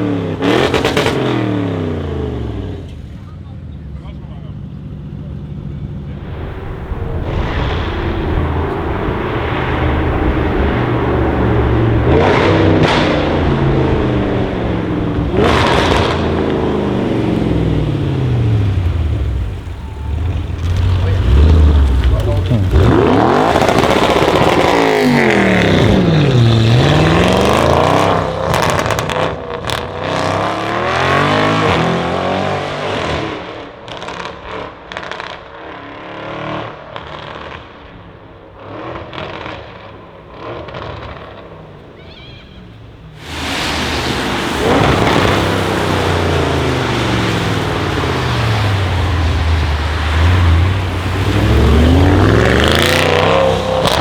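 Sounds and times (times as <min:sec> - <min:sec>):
car engine accelerating hard: 0:00.0 - 0:42.0, 0:42.7 - 0:54.0
exhaust crackles and pops: 0:06.0 - 0:30.2, 0:36.9 - 0:54.0.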